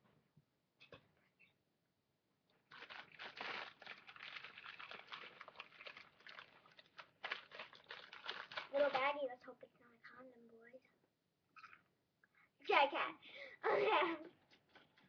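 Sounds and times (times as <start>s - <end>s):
plastic bag crinkling: 2.5s - 9.4s.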